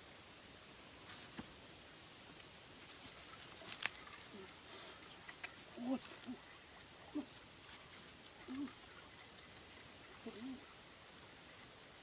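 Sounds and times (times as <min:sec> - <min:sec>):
insects droning: 0:00.0 - 0:12.0
low animal calls: 0:08.4 - 0:10.8.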